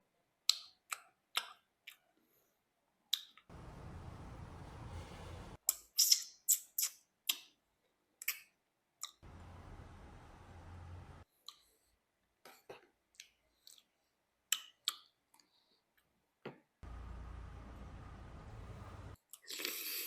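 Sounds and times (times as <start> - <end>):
low background noise: 3.5 - 5.6, 9.2 - 11.2, 16.8 - 19.2.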